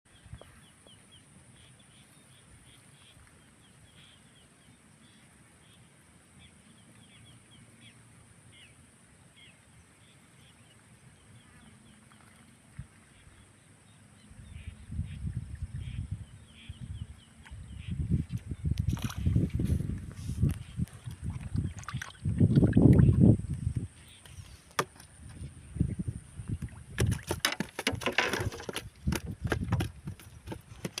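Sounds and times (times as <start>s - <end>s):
water sloshing and splashing: 18.3s - 25.7s, 26.4s - 31.0s
clicks and knocks: 27.0s - 31.0s.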